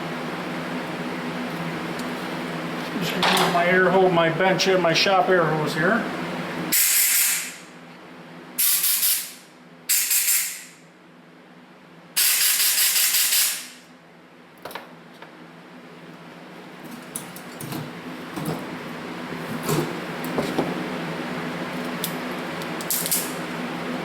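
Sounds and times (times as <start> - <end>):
compressed air blasts: 6.7 - 7.7, 8.6 - 10.8, 12.2 - 13.8.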